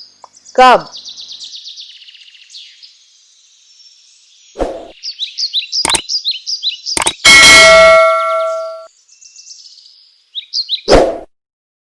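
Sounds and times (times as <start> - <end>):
bird chirps: 0.0 - 10.9
bell-like ding: 7.0 - 8.9.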